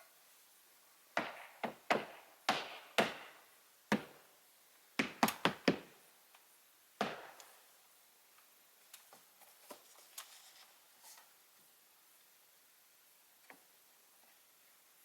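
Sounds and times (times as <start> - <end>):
hand tool striking wood: 1.2 - 4.2, 7.0 - 7.4.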